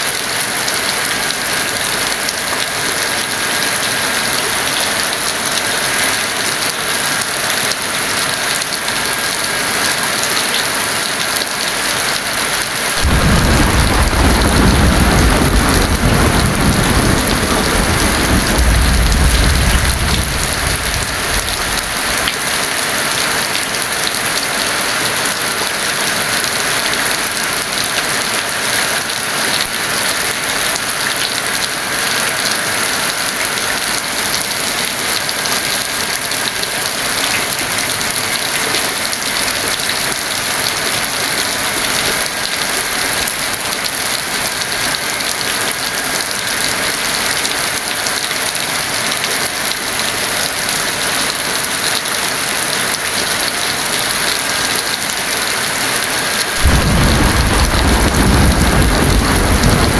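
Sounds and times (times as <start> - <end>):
heavy rain falling: 0.0 - 59.9
thunder rumbling: 13.0 - 22.6, 56.6 - 59.9.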